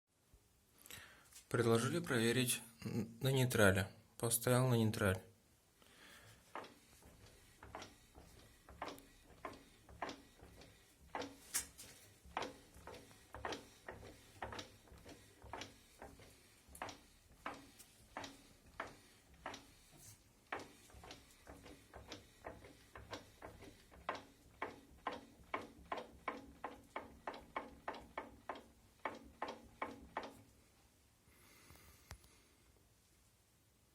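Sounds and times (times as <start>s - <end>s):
car drivetrain knocking: 6.6s - 11.4s, 12.3s - 19.7s, 20.5s - 30.4s.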